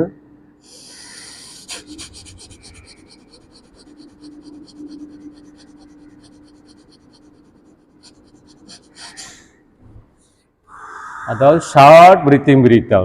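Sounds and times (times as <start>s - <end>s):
rapid forceful exhalations: 0.6s - 2.4s.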